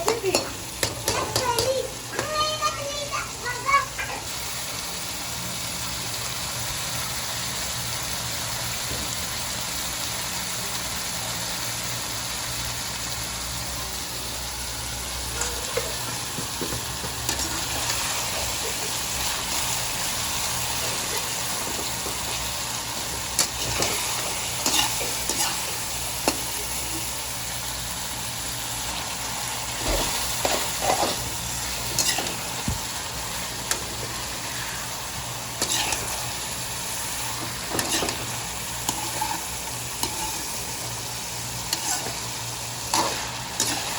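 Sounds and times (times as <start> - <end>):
food sizzling in hot oil: 0.0 - 43.9
utensil scraping a pan: 23.0 - 26.4, 35.6 - 36.2, 37.3 - 40.7, 41.7 - 42.2, 42.9 - 43.9.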